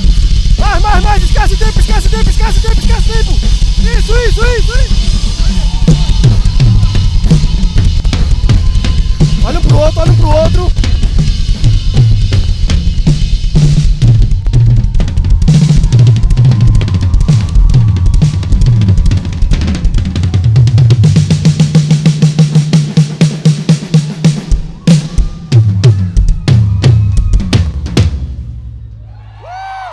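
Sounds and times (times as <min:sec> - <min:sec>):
drum kit solo: 0:00.0 - 0:28.9.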